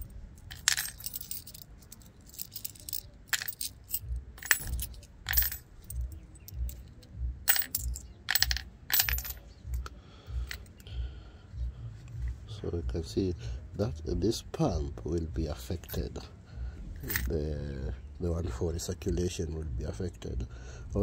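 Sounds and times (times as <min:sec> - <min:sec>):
coins clinking in a drain pump: 0:00.0 - 0:06.8, 0:07.5 - 0:09.4, 0:17.0 - 0:17.3.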